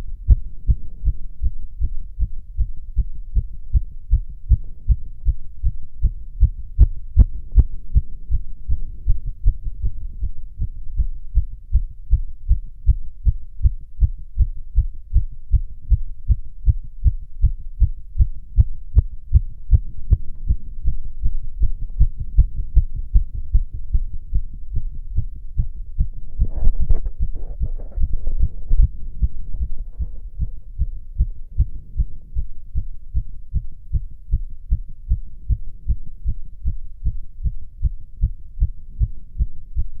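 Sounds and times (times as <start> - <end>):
heartbeat through stethoscope: 0.0 - 40.0
scratchy noise: 26.1 - 30.7.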